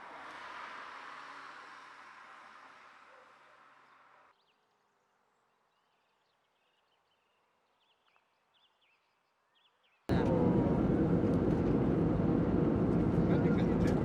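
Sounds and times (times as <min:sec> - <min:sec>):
rush of noise: 0:10.1 - 0:14.0.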